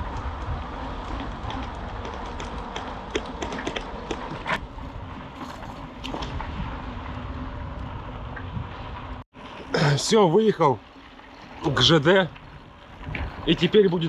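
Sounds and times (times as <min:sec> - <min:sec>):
bike clicks and rattles: 0:00.0 - 0:06.8
wind rumble on microphone: 0:00.0 - 0:09.3, 0:11.3 - 0:14.0.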